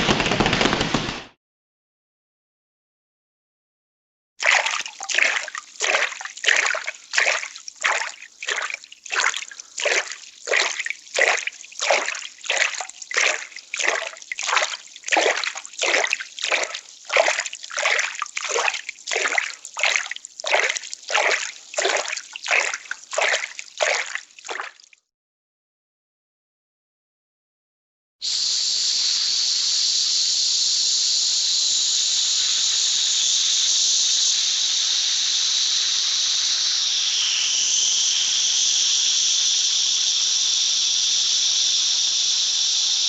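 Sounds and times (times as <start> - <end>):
rhythmic water splashing: 4.4 - 24.9.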